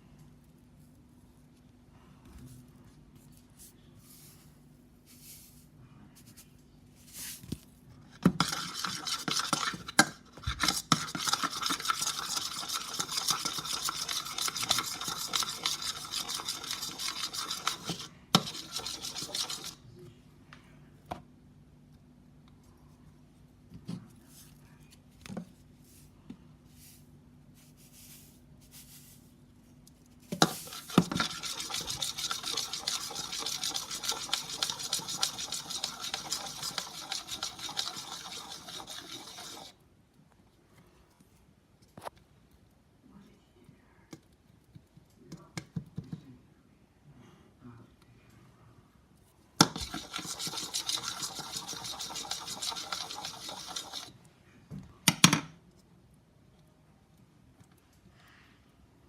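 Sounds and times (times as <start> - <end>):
utensil scraping slime in bowl: 8.2 - 19.8, 30.2 - 39.8, 49.6 - 54.2.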